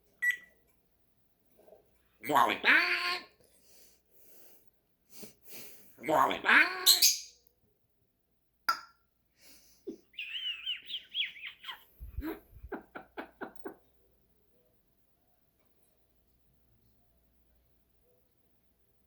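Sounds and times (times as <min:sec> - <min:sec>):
parrot whistling: 0:10.2 - 0:11.8.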